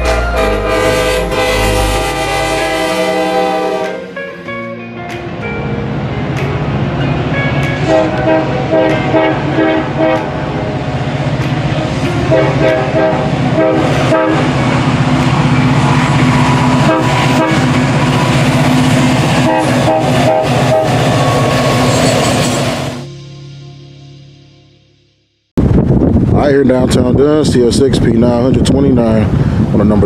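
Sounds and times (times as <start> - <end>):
locomotive air horn blasts: 0.0 - 4.5, 7.8 - 10.8, 12.2 - 23.6
locomotive engine drone: 0.0 - 26.4.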